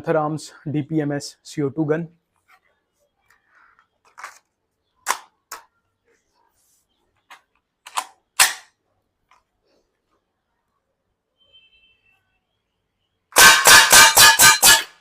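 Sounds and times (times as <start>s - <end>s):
air rifle clicks and snaps: 7.8s - 8.7s.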